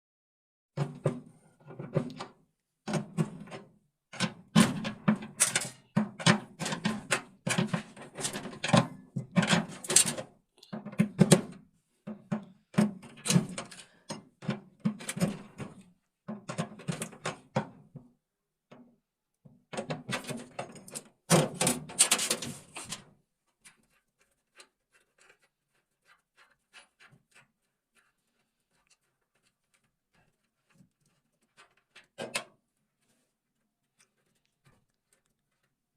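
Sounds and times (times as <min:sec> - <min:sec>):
tools knocking and scraping metal: 0:00.8 - 0:17.8.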